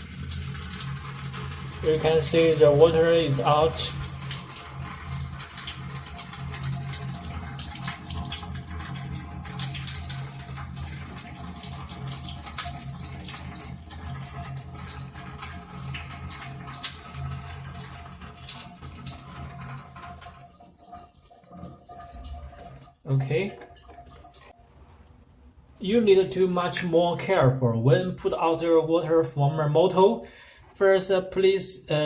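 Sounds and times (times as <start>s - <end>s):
water draining and splashing: 0.0s - 24.6s.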